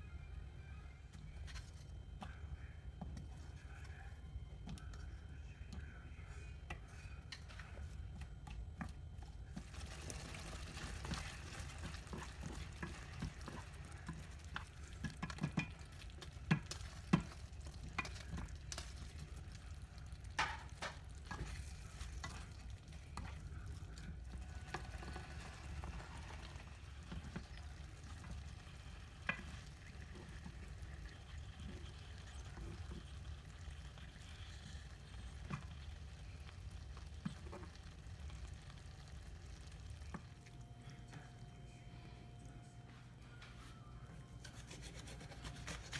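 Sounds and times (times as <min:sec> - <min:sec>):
stir-fry sizzling in a pan: 0:09.6 - 0:40.2.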